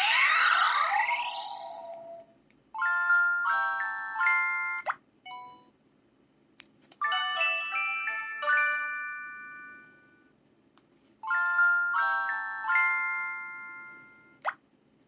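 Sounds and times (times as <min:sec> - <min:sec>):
bell-like electronic chime notes: 0:00.0 - 0:02.2.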